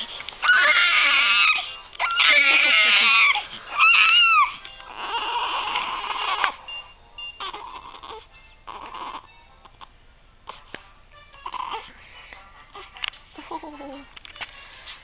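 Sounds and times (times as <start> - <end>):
newborn baby crying: 0.4 - 6.6, 7.4 - 9.4, 11.4 - 12.0.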